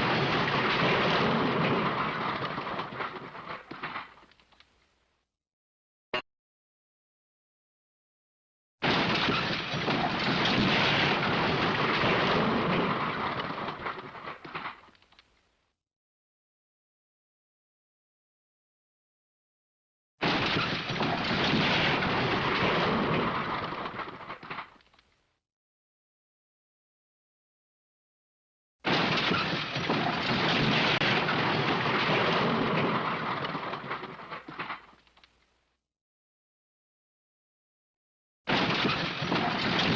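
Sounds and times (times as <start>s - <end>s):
scattered clatters: 8.8s - 15.4s, 20.2s - 25.2s, 28.9s - 35.6s, 38.5s - 39.9s.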